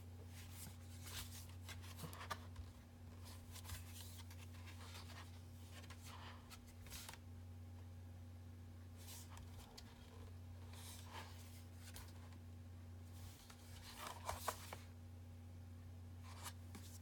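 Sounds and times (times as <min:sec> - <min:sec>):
book pages turning: 0:00.3 - 0:07.2, 0:09.0 - 0:12.3, 0:13.2 - 0:14.9, 0:16.3 - 0:17.0
soft paper swishes: 0:00.3 - 0:07.2, 0:13.1 - 0:14.9.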